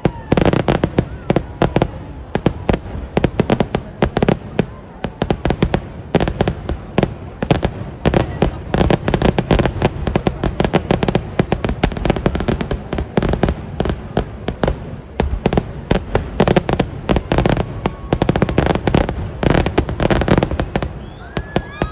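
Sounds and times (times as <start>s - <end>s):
fireworks barrage of bangs: 0.0s - 21.9s.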